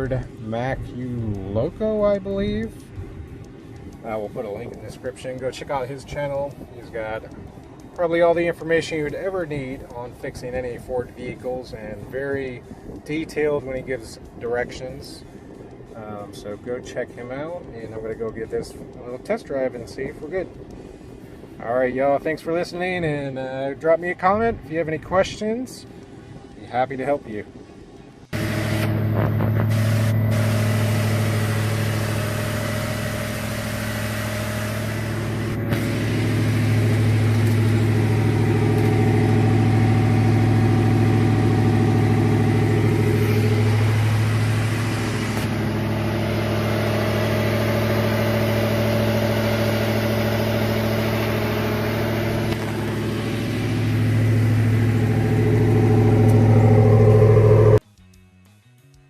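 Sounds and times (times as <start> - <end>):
truck engine revving: 28.3 - 57.8.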